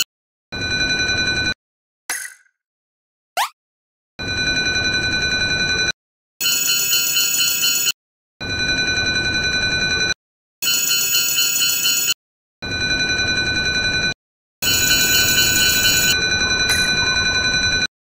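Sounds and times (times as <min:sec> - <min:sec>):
railroad crossing bells ringing: 0:12.8 - 0:17.9.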